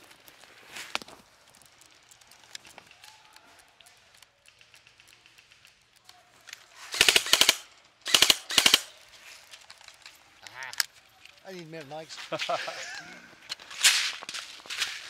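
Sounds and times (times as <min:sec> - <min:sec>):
airsoft gun automatic fire: 0:06.9 - 0:08.9.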